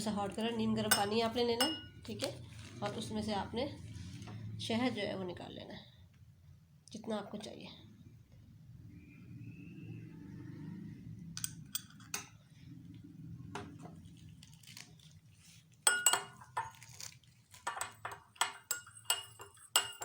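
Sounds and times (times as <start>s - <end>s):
metal spoon clinking glass: 0.8s - 2.1s, 11.4s - 12.4s, 15.8s - 16.8s, 17.6s - 20.0s.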